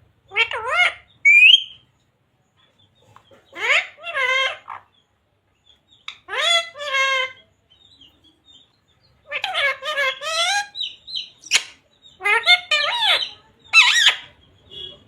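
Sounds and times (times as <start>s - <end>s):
parrot mimicking speech: 0.3s - 1.1s.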